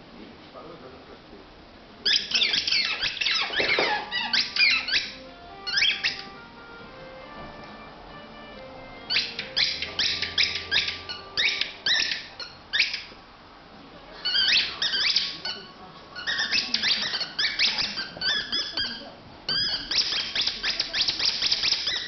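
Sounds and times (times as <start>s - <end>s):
animal high-pitched squealing: 2.0s - 6.2s, 9.1s - 13.1s, 14.2s - 22.0s.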